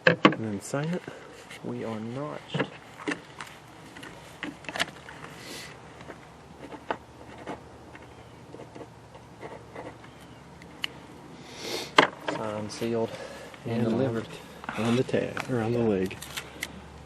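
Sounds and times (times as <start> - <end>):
paper tag handled: 0.9 - 5.4, 14.6 - 16.8.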